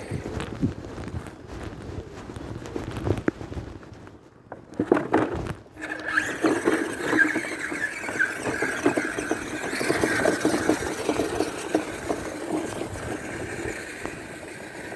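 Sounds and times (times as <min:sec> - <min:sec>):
electric motor whining: 0:05.8 - 0:14.0.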